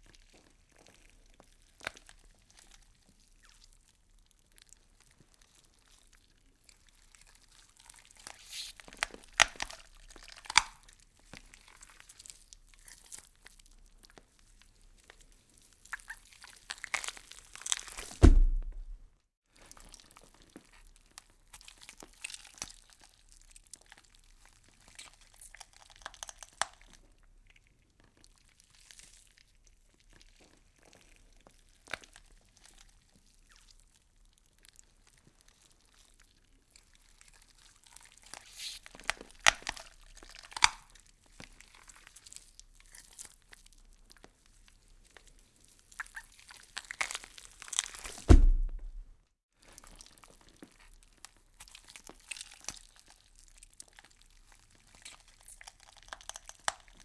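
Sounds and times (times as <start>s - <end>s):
wet crunching and tearing: 8.2s - 10.9s, 15.9s - 19.0s, 38.8s - 40.9s, 45.9s - 49.1s, 54.8s - 57.0s
deep boom dropping in pitch: 18.2s - 19.0s, 48.3s - 49.1s.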